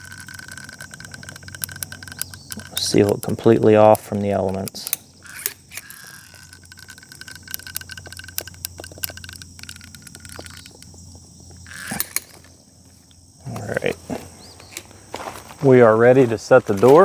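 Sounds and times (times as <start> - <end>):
caulking gun clacks: 0.0 - 11.0
caulking gun ratchet clicks: 0.0 - 12.5.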